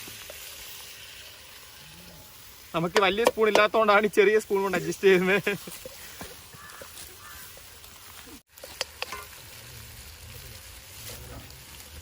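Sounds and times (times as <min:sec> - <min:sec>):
prawns sizzling in a pan: 0:00.0 - 0:12.0.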